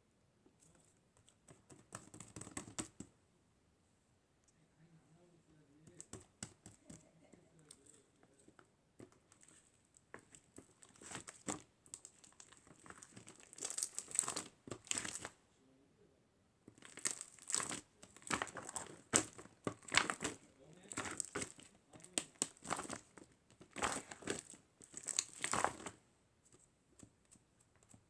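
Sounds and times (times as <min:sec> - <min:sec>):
crinkling and rustling: 0:05.9 - 0:15.4, 0:16.7 - 0:28.0.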